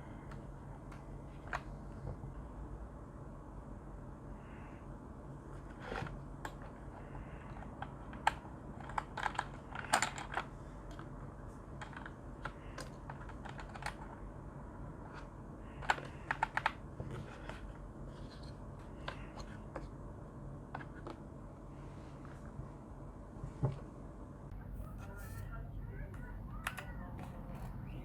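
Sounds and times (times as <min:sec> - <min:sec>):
mechanical keyboard typing: 0:07.5 - 0:10.5, 0:11.8 - 0:14.2, 0:15.8 - 0:16.8.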